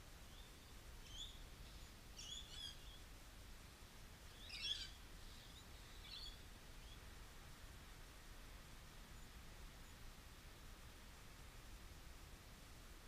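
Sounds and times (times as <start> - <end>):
faint bird chirps: 0.3 - 3.1, 4.3 - 7.1, 9.1 - 10.1.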